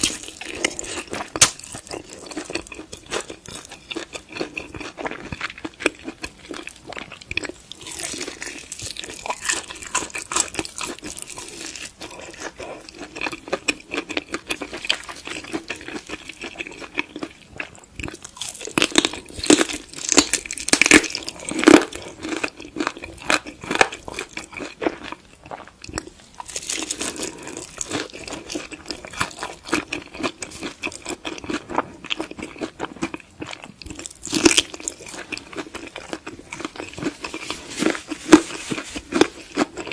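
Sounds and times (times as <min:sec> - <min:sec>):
chewing and crunching food: 0:00.0 - 0:39.9.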